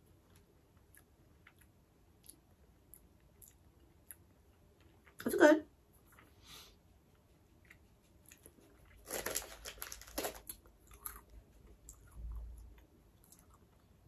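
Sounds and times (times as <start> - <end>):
person chewing crunchy snacks: 8.3 - 12.6.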